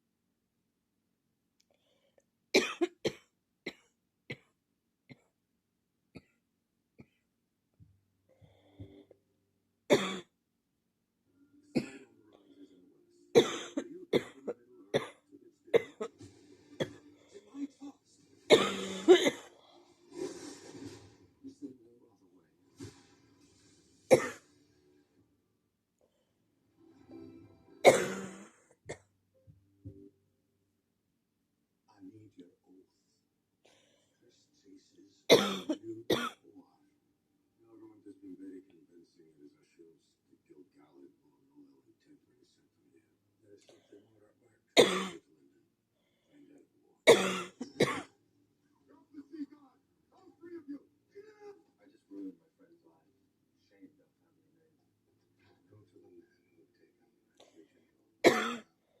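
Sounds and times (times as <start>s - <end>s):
person coughing: 2.6s - 3.8s, 18.5s - 19.5s, 24.1s - 24.4s, 27.8s - 28.6s, 47.1s - 48.1s, 58.2s - 58.7s
person coughing hard: 2.6s - 4.4s, 9.9s - 10.3s, 13.4s - 16.1s, 18.5s - 19.5s, 24.1s - 24.4s, 27.8s - 28.6s, 35.3s - 36.4s, 44.8s - 45.2s, 47.1s - 48.1s, 58.2s - 58.7s.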